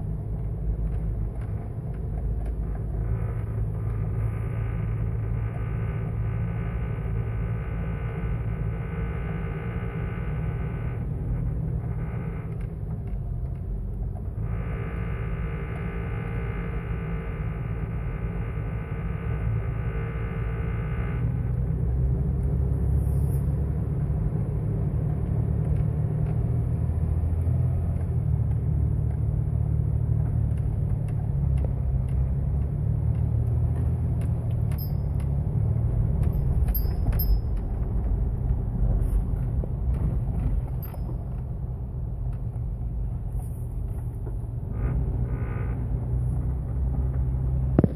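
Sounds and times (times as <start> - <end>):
car engine rumbling: 0.0 - 47.9
buzzing vibration: 2.6 - 13.3, 14.2 - 22.2.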